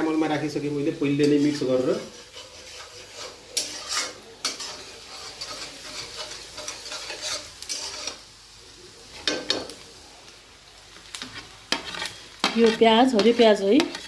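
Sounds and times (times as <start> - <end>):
food sizzling in oil: 0.0 - 14.0
spatula scraping pan: 1.2 - 8.3, 11.1 - 14.0.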